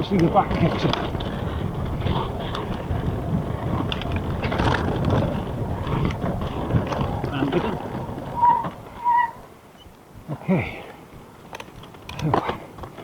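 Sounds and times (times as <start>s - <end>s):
bike knocks and rattles: 0.0s - 9.0s
wind on microphone: 0.0s - 9.6s
bike tyres rolling over ground: 0.0s - 9.8s, 11.0s - 13.0s.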